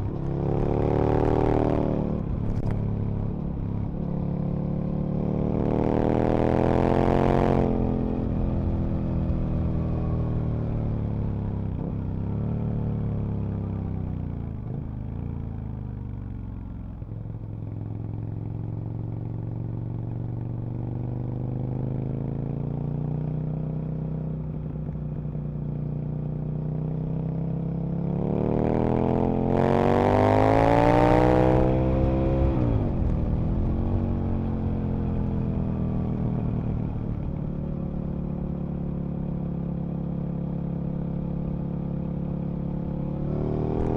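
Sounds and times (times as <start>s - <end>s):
motorcycle engine revving: 0.0s - 13.0s, 27.0s - 43.9s.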